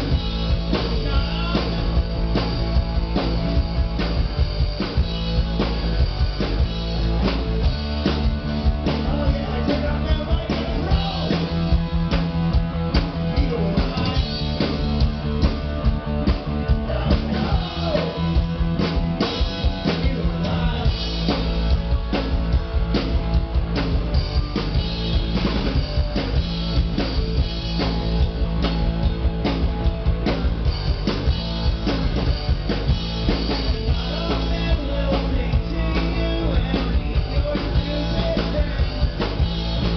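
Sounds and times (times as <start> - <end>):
drum kit beat: 0.0 - 39.9
live rock band playing: 0.0 - 39.9
person singing: 16.7 - 18.4, 33.7 - 39.1.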